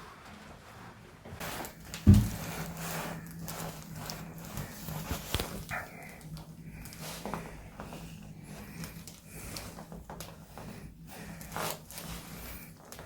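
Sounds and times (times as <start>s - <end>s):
low steady hum: 1.4s - 13.0s
heavy thud on table: 2.1s - 2.5s.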